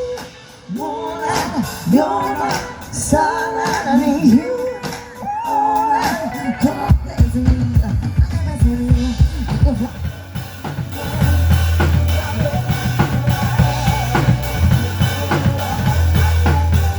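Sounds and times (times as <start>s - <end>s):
drum kit playing beat: 0.0s - 16.9s
low bass tone: 8.9s - 16.9s.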